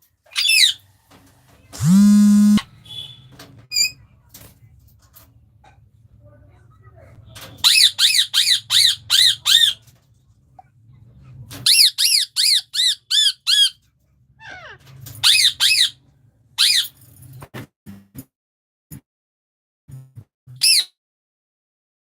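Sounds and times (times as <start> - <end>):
parrots screeching: 14.4 - 16.0.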